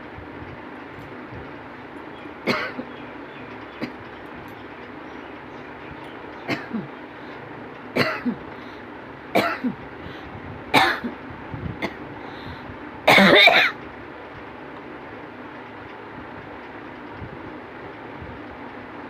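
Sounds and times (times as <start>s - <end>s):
person coughing: 2.5s - 2.8s, 6.5s - 6.9s, 8.0s - 8.4s, 9.4s - 9.8s, 13.1s - 13.8s.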